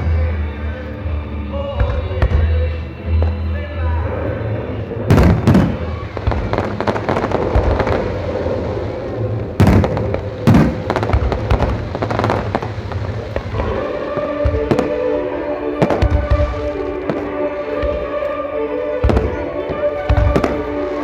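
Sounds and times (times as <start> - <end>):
firework crackling: 4.5 - 18.4, 19.0 - 21.0
firework booms: 5.1 - 15.2, 15.8 - 18.1, 19.0 - 21.0.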